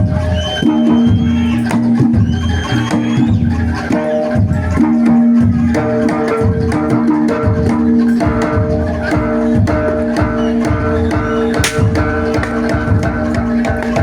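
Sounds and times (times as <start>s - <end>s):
live percussion music: 0.0s - 14.0s
drum strokes: 11.6s - 12.6s.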